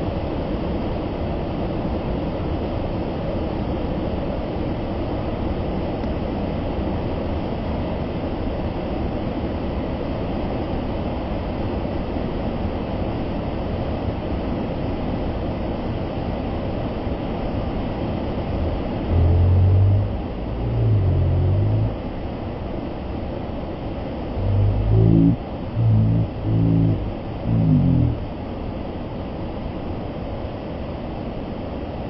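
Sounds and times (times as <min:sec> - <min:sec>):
very low rumbles: 0:18.5 - 0:22.1, 0:24.3 - 0:28.4.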